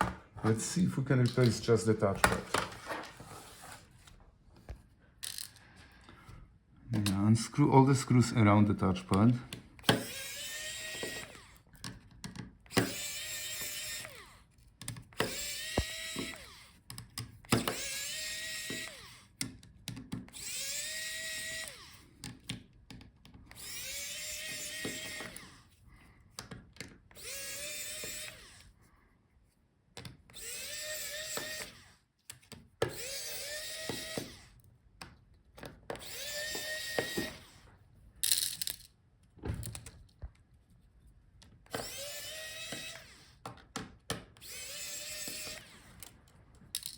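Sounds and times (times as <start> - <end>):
electric screwdriver whining: 9.8 - 11.7, 12.7 - 16.8, 17.5 - 19.4, 20.3 - 22.2, 23.5 - 25.8, 27.1 - 28.8, 30.3 - 32.0, 32.8 - 34.6, 35.9 - 37.6, 41.6 - 43.5, 44.4 - 46.2.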